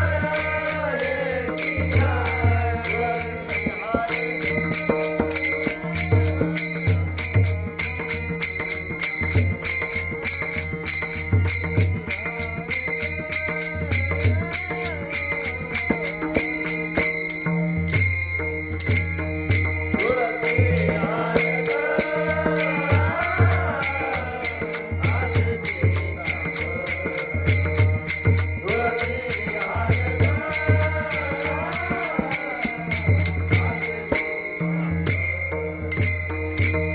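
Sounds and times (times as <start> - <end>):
hand cymbals beating: 0.0 - 36.9
steady held tones: 0.0 - 36.9
person singing: 20.0 - 27.5.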